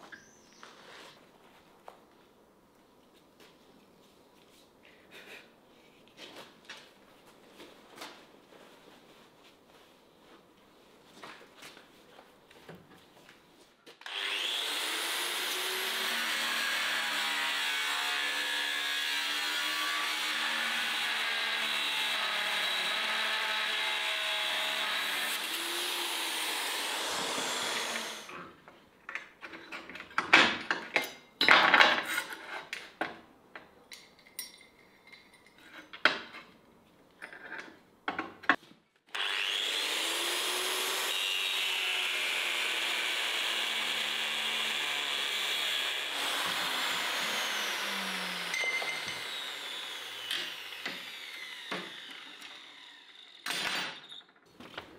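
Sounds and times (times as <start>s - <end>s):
small motor tool running: 46.1s - 53.5s.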